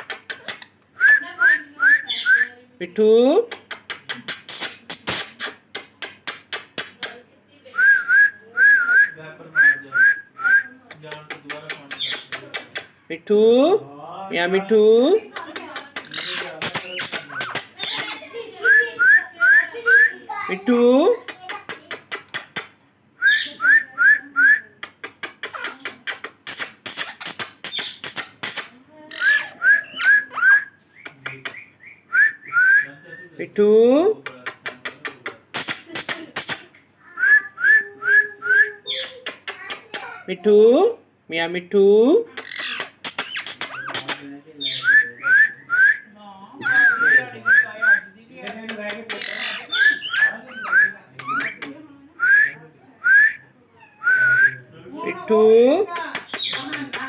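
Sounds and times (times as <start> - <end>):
parrot clicking: 0.0 - 0.7, 3.5 - 7.2, 10.9 - 12.9, 15.4 - 18.2, 21.2 - 22.8, 24.8 - 30.2, 34.3 - 36.7, 38.9 - 40.1, 42.4 - 45.0, 48.5 - 51.8, 55.9 - 57.0
rasping chirps: 0.0 - 0.8, 1.9 - 2.5, 3.5 - 7.2, 11.0 - 13.0, 15.3 - 18.8, 24.8 - 32.6, 42.4 - 45.9, 48.5 - 51.8, 55.9 - 57.0.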